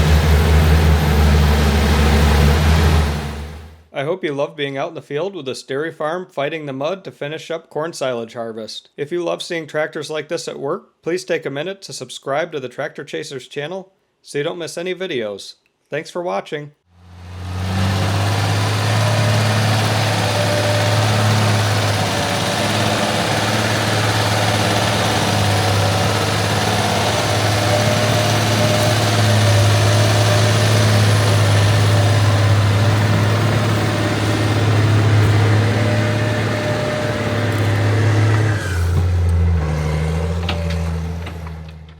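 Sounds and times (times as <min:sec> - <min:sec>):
heavy machinery engine hum: 0:00.0 - 0:03.8, 0:16.9 - 0:41.9.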